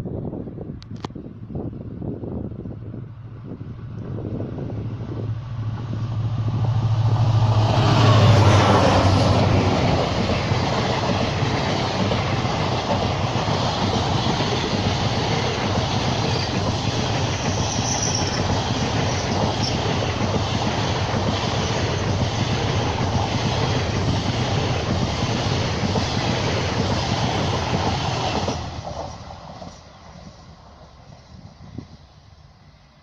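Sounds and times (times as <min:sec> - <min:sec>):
diesel locomotive engines passing: 0:00.0 - 0:33.0
train wheels clacking on rails: 0:07.2 - 0:30.4.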